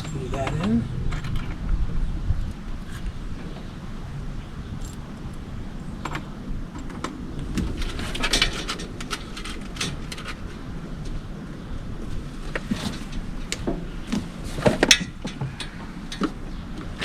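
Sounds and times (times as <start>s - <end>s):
low background rumble: 0.0s - 17.0s
small hardware clicking and rattling: 4.8s - 5.4s.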